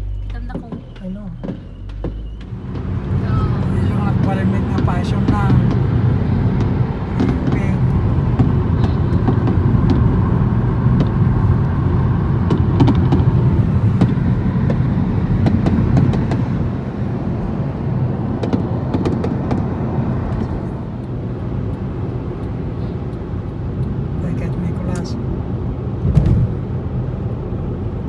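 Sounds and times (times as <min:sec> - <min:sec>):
car cabin road rumble: 0:00.0 - 0:28.0
fireworks popping: 0:06.6 - 0:10.2, 0:12.4 - 0:16.7.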